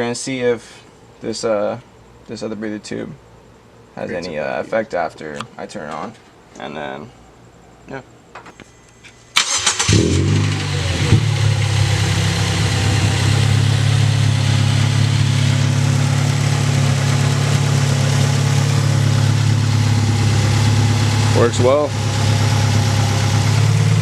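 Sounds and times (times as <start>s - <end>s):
starter cranking engine: 9.4s - 11.4s
car engine idling: 9.4s - 24.0s.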